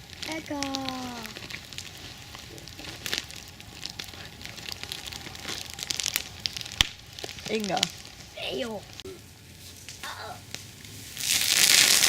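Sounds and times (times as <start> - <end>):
campfire crackling and popping: 0.0 - 12.0.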